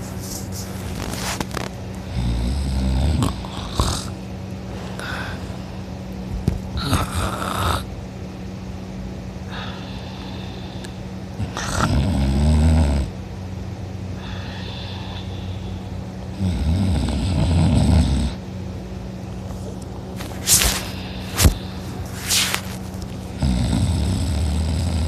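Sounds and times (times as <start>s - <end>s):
person snoring loudly: 2.0s - 4.2s, 6.8s - 7.9s, 9.5s - 13.1s, 14.2s - 18.4s, 23.3s - 25.0s
breathy sounds: 3.4s - 6.0s, 9.5s - 11.9s, 14.2s - 16.1s, 20.2s - 22.8s.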